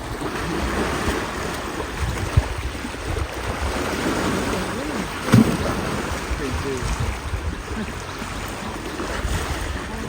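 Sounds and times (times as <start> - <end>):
river water rushing: 0.0 - 10.0
dull thump: 5.2 - 6.2.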